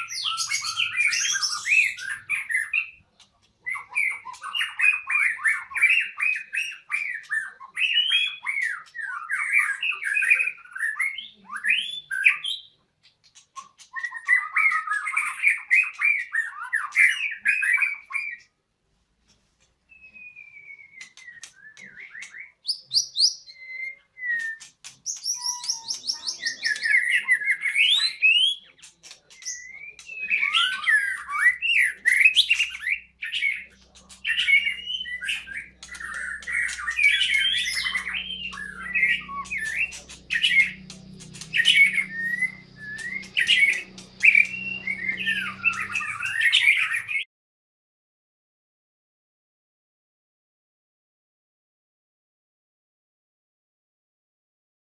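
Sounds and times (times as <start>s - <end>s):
bird singing whistled phrases: 0.0s - 3.0s, 13.6s - 18.5s, 19.9s - 28.6s, 29.3s - 47.2s.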